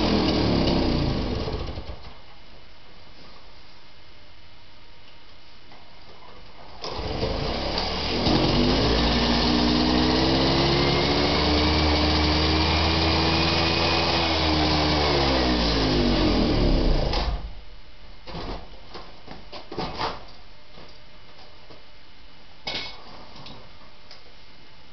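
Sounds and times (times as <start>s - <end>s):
moped engine revving: 0.0s - 2.0s, 6.9s - 17.3s.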